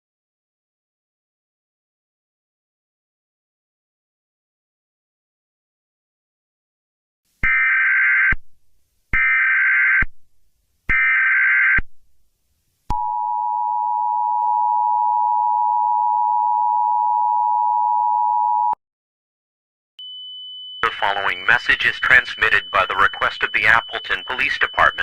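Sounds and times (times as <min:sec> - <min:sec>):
harsh two-pitch alert tone: 0:20.8 - 0:25.0.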